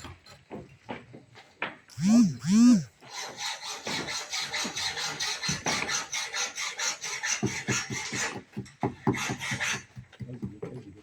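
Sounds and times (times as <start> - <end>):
hand tool rasping strokes: 1.9 - 2.9.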